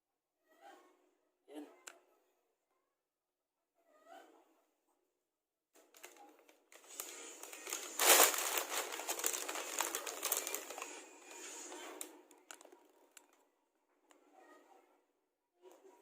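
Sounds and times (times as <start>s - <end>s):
packaging crinkling and rustling: 5.9s - 13.4s.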